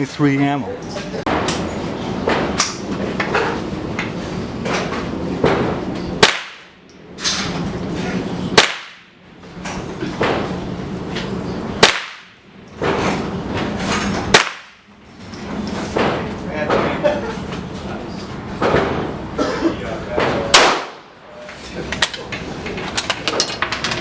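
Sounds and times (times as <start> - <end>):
rifle shots: 20.5 - 21.1.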